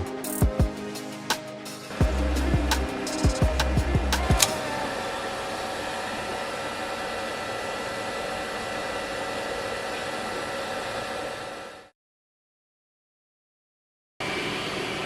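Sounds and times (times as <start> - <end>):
fans whirring: 0.8 - 11.9.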